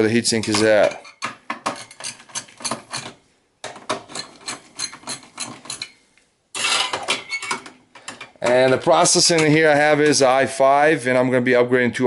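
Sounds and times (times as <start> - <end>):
scrape or clatter: 6.6 - 7.6.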